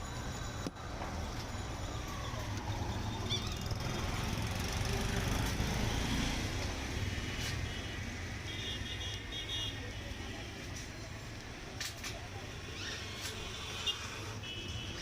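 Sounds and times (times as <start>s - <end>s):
passing vehicle engine rumble: 0.9s - 7.6s.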